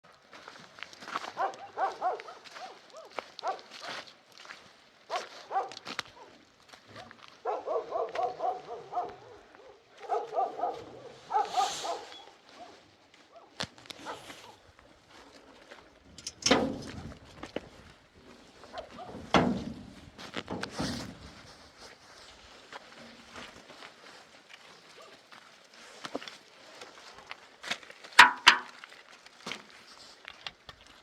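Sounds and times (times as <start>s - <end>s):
sharp knocks: 28.2s - 28.8s.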